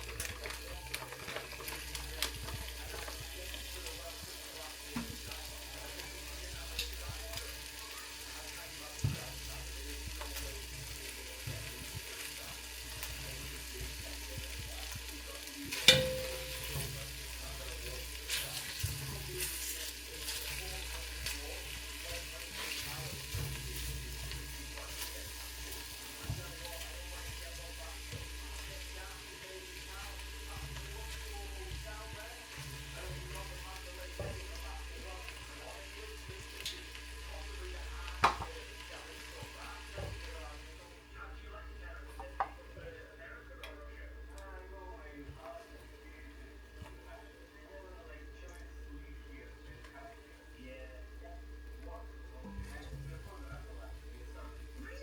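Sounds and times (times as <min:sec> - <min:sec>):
food sizzling in a pan: 0:00.0 - 0:42.6.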